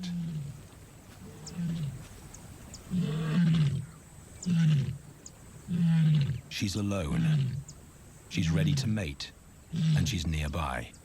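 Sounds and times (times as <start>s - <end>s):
lioness calling: 9.7s - 10.3s.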